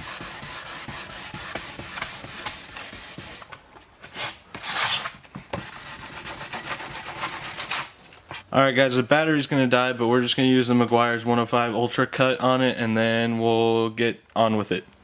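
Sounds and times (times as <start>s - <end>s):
sandpaper scratching strokes: 0.0s - 3.5s, 4.1s - 8.0s.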